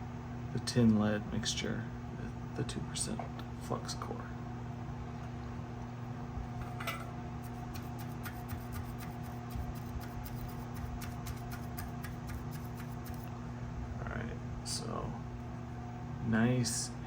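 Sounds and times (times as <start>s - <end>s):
low electrical hum: 0.0s - 17.0s
soldering tip scratching on wool: 7.4s - 13.3s.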